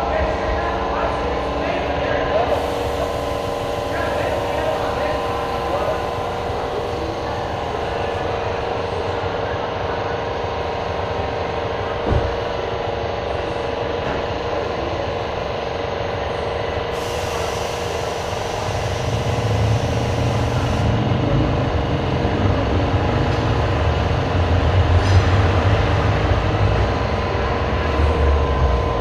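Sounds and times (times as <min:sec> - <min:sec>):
hiss: 0:16.9 - 0:20.9.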